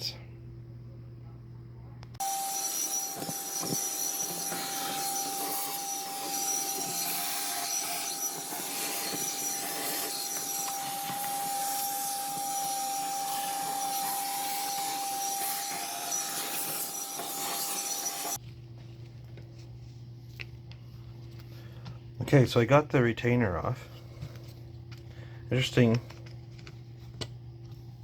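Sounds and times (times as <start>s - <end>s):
small motorised tool whining: 2.2s - 18.4s.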